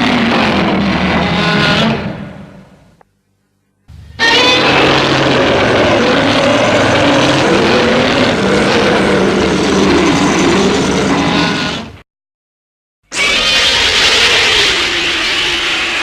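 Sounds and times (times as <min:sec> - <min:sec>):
monster roar: 0:04.2 - 0:12.0, 0:13.1 - 0:16.0.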